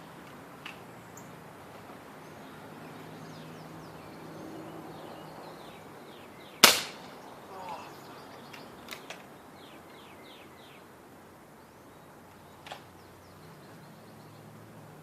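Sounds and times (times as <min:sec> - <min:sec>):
pellet gun firing crack: 0:06.6 - 0:07.1.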